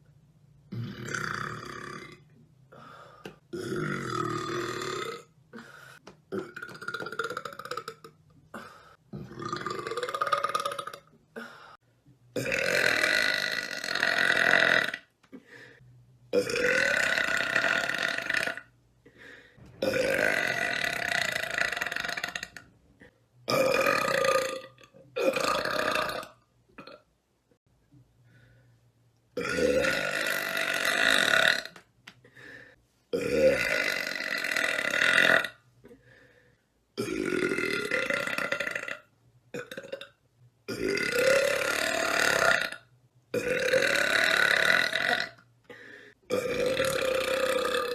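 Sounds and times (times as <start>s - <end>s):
woman burping: 6.3s - 11.1s, 39.6s - 45.4s, 46.3s - 47.9s.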